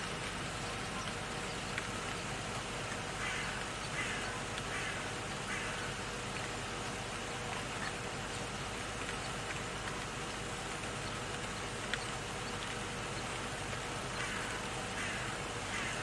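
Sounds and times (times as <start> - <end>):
steady background hiss: 0.0 - 16.0
crow cawing: 3.2 - 6.0, 14.1 - 16.0.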